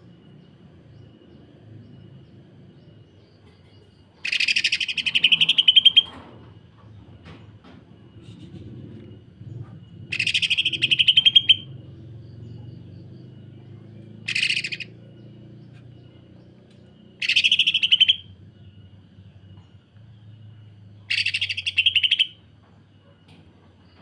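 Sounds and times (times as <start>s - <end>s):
bird singing rattling bursts: 3.4s - 19.2s, 20.3s - 22.7s.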